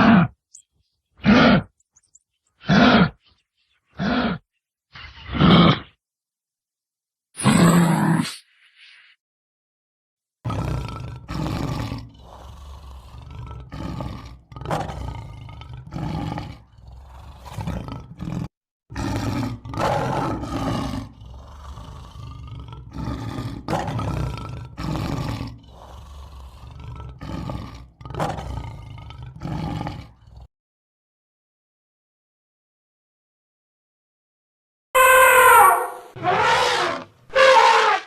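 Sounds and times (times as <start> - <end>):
large animal roaring: 0.0 - 0.4, 4.0 - 4.4, 10.5 - 30.5, 35.0 - 38.0.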